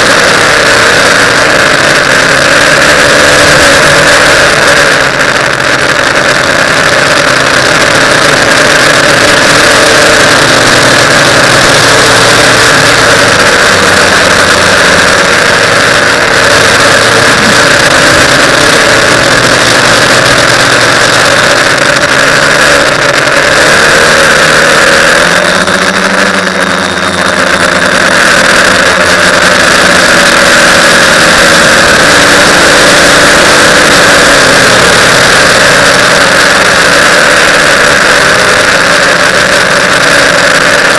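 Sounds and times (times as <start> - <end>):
quadcopter motors and propellers: 0.0 - 40.9.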